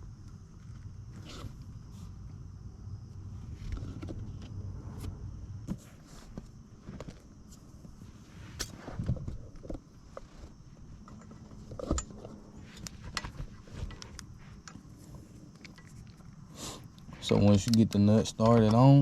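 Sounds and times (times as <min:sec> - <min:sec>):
metal parts clicking: 0:17.3 - 0:19.0.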